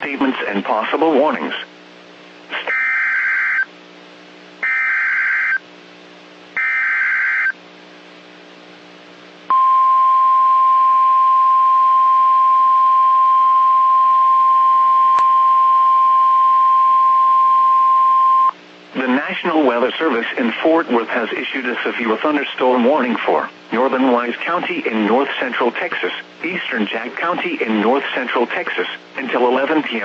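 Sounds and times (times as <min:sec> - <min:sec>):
steady single-pitch alarm tone: 0:02.7 - 0:03.7, 0:04.6 - 0:05.6, 0:06.6 - 0:07.6.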